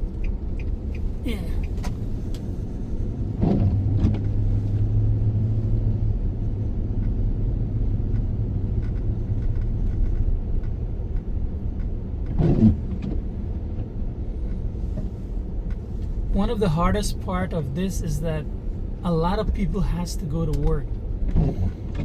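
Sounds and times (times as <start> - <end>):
car road and engine rumble: 0.0 - 22.0.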